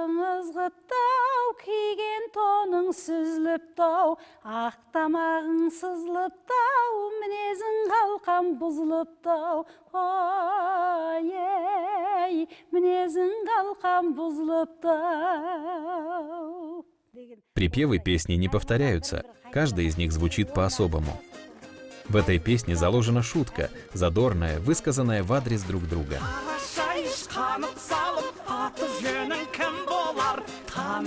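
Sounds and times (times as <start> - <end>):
woman singing folk song unaccompanied: 0.0 - 17.4, 26.3 - 31.0.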